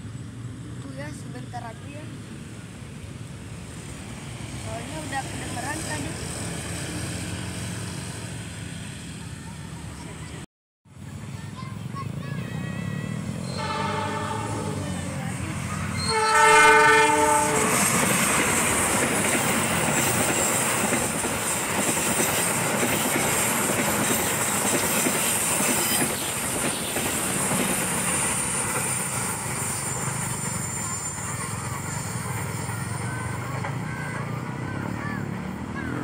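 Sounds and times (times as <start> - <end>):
train rumbling past: 0.0 - 36.0
high wheel squeal: 12.6 - 22.5, 24.1 - 36.0
train horn: 13.4 - 15.0, 16.0 - 18.0
wheels clattering over rails: 17.2 - 36.0.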